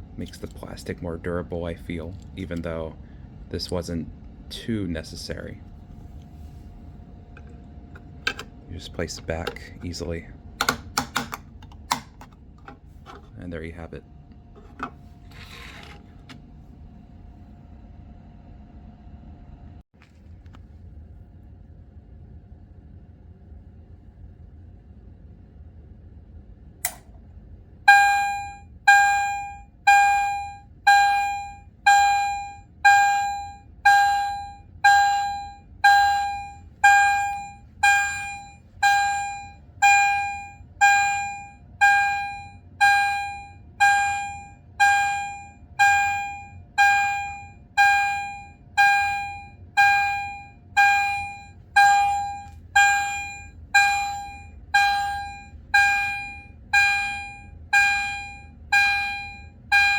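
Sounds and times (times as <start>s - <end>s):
fire alarm chime tone: 27.9s - 59.9s.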